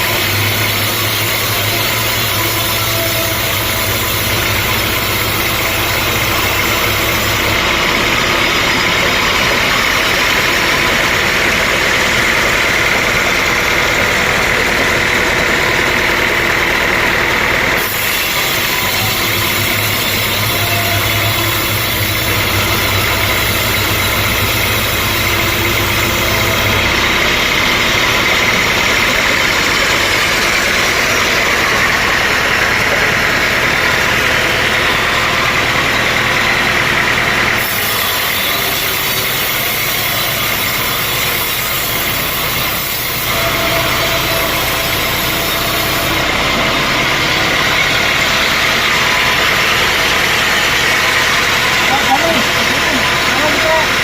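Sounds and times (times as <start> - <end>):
sawmill saw cutting log: 0.0 - 54.0.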